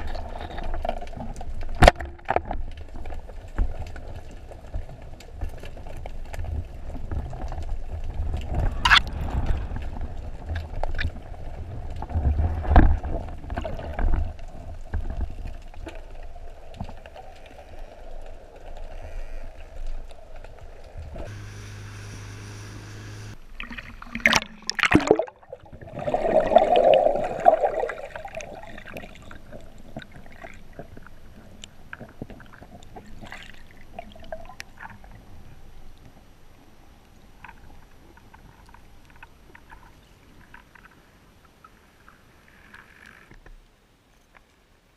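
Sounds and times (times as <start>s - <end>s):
water gurgling and sloshing: 0.0s - 43.4s.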